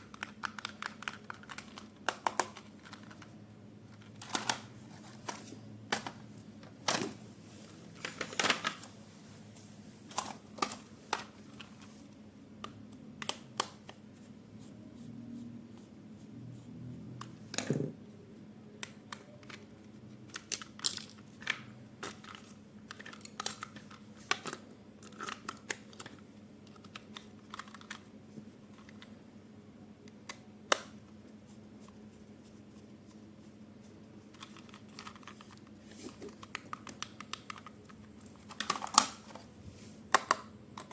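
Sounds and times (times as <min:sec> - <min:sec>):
toy packaging rustling and crinkling: 0:00.0 - 0:06.2, 0:06.8 - 0:09.0, 0:20.3 - 0:29.1, 0:34.3 - 0:39.5.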